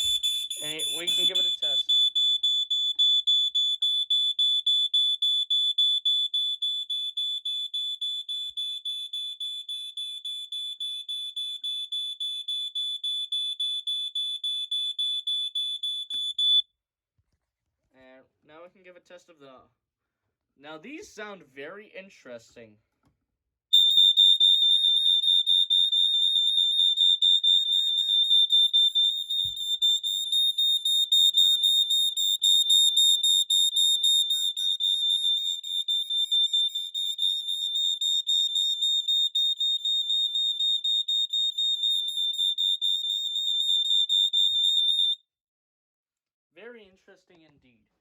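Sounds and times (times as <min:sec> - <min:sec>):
smoke alarm horn tone: 0:00.0 - 0:16.6, 0:23.7 - 0:45.2.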